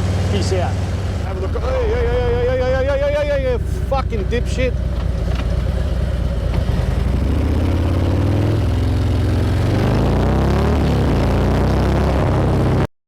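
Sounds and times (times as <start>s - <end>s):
motorcycle engine revving: 0.0s - 12.9s.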